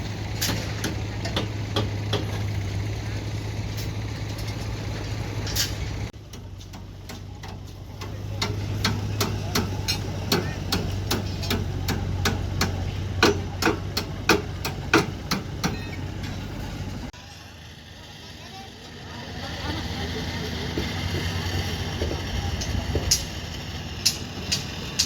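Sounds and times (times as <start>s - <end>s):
diesel engine running: 0.0s - 25.0s
sharp metallic knocks: 6.3s - 16.0s.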